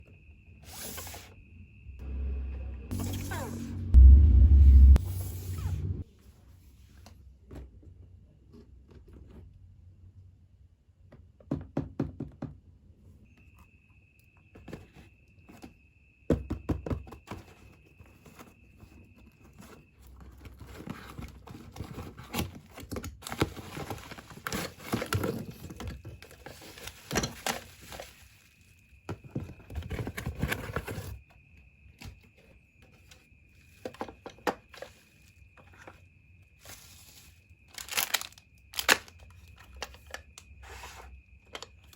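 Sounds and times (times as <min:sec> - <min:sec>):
faint steady high tone: 0:00.0 - 0:06.0
packaging rustling: 0:37.8 - 0:39.1.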